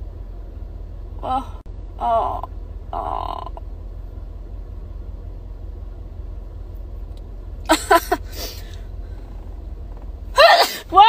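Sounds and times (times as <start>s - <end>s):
steady low hum: 0.0s - 11.0s
woman sneezing: 10.4s - 11.0s.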